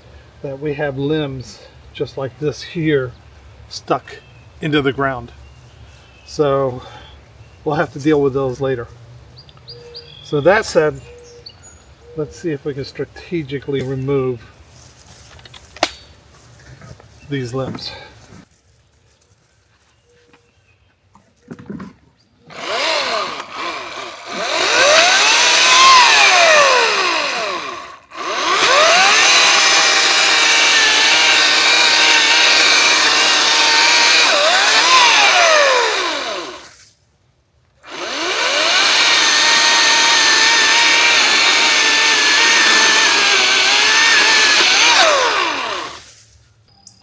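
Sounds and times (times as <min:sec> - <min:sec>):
electric chainsaw cutting wood: 0:22.5 - 0:36.8, 0:37.8 - 0:46.1.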